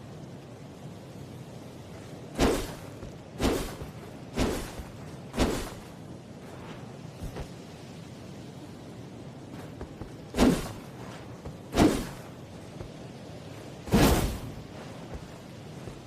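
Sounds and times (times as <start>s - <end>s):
sword whooshing through air: 2.4s - 5.9s, 10.3s - 12.3s, 13.9s - 14.7s.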